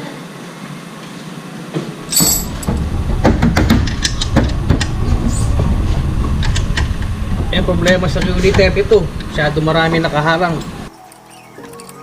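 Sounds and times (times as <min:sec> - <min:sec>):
steady low rumble: 0:02.0 - 0:10.9
metal tools clinking: 0:02.1 - 0:02.8.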